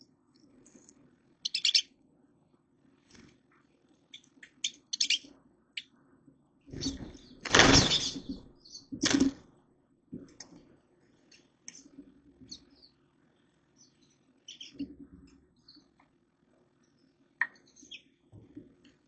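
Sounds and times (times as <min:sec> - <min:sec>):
small birds chirping: 0:00.0 - 0:02.0, 0:03.8 - 0:06.0, 0:06.7 - 0:09.3, 0:11.1 - 0:16.1, 0:16.7 - 0:18.3.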